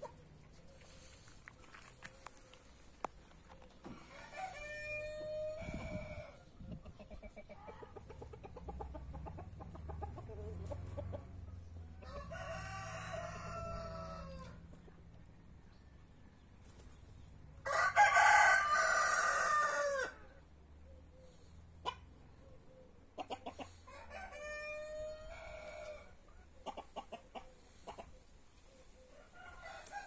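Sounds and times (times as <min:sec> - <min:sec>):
chickens clucking: 0:00.0 - 0:12.3, 0:20.7 - 0:29.8
roosters crowing: 0:03.9 - 0:06.6, 0:11.8 - 0:14.7, 0:17.6 - 0:20.4, 0:23.7 - 0:26.3, 0:29.1 - 0:30.0.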